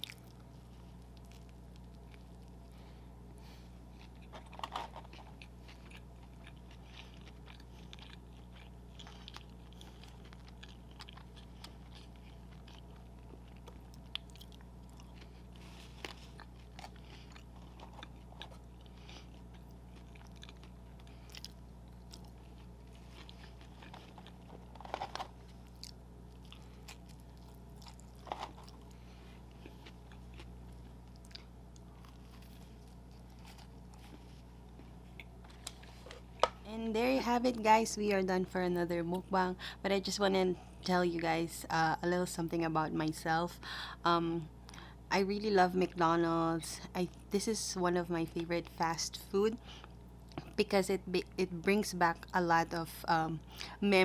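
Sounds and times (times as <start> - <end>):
close chewing and biting food: 0.0 - 2.8, 3.6 - 36.6
low hum: 0.0 - 54.0.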